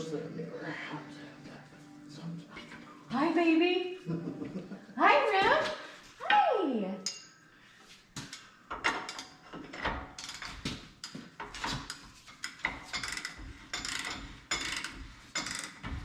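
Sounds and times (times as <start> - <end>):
metal tools clicking and clinking: 8.7 - 15.9.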